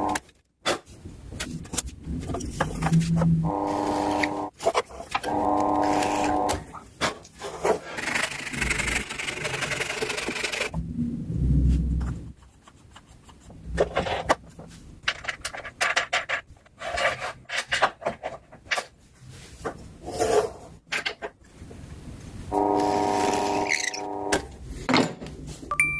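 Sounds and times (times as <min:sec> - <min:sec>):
steady droning tone: 0:22.5 - 0:24.4.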